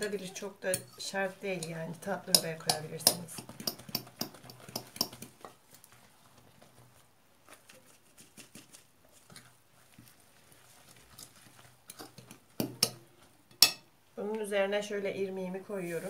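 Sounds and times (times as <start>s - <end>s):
utensil tapping against bowl: 1.5s - 5.5s, 11.9s - 13.8s.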